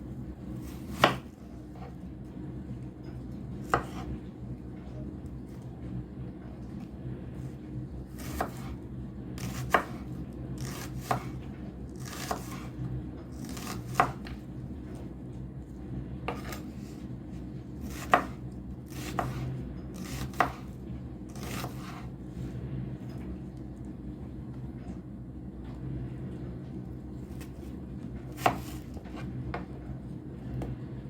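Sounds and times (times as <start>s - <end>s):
knife chopping food: 0.6s - 1.3s, 3.7s - 4.1s, 8.2s - 8.8s, 9.4s - 11.4s, 12.0s - 12.7s, 13.4s - 14.4s, 16.3s - 16.8s, 17.8s - 20.7s, 21.3s - 22.1s, 28.3s - 29.7s.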